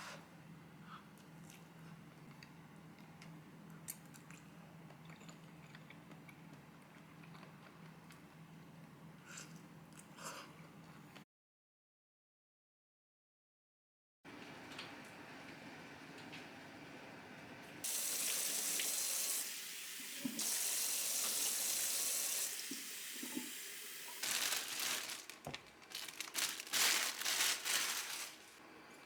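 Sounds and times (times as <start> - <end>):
tap water running into sink: 17.8 - 24.2.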